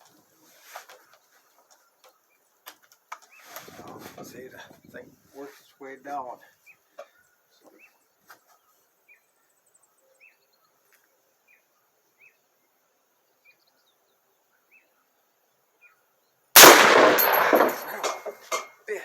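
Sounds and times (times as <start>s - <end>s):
faint bird chirps: 5.4s - 16.4s
loud rifle shot ringing: 16.6s - 18.3s.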